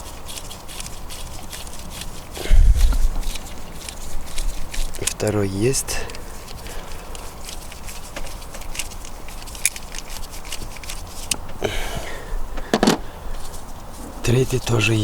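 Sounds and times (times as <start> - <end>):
hand tools clicking on metal: 3.2 - 13.0
loud knocks: 12.6 - 13.1.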